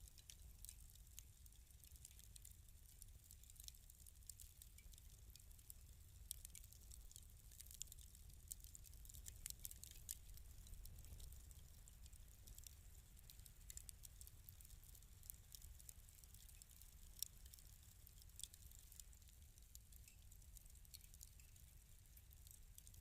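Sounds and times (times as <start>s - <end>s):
fire crackling: 0.0s - 23.0s.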